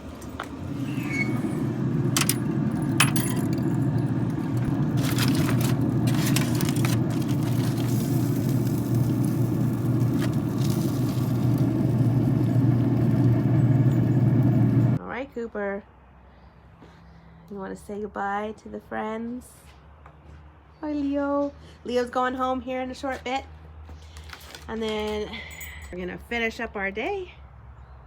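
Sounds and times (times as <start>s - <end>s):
low mechanical rumble: 0.0s - 15.0s
metallic jingling and clicks: 24.9s - 26.0s.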